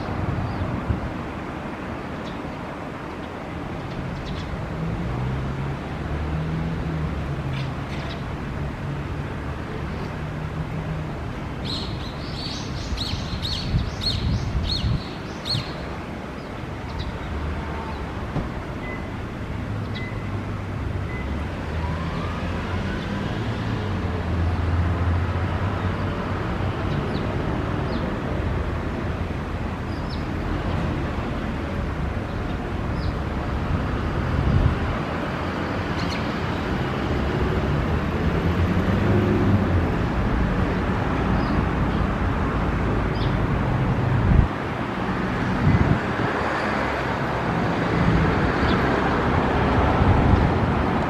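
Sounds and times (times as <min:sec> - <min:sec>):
bird chirping: 0:11.6 - 0:15.8.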